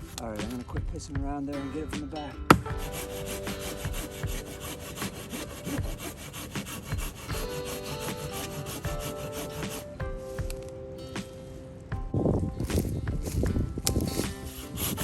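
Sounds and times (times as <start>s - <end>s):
handsaw rasping through wood: 2.7s - 10.0s, 14.0s - 15.0s.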